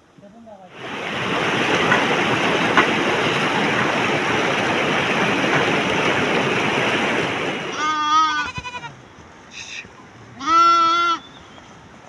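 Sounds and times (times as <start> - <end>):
steady loud rushing noise: 0.7 - 7.8.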